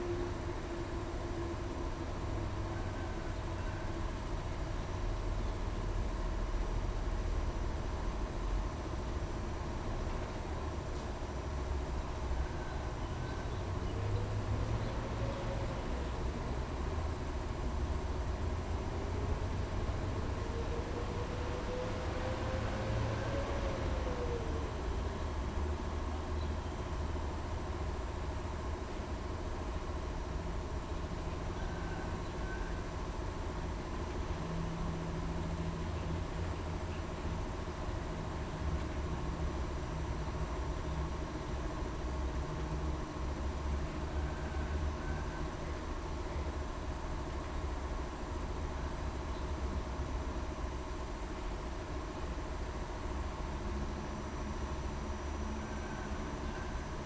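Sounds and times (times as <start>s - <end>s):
faint mechanical whines: 0.0s - 57.0s
machine running with low hum: 0.0s - 57.0s.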